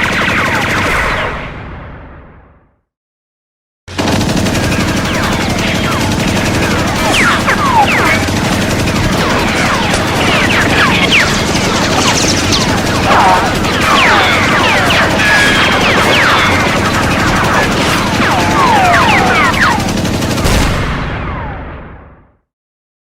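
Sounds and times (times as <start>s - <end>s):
machine gun automatic fire: 3.9s - 21.1s
short falling whines: 4.8s - 20.1s.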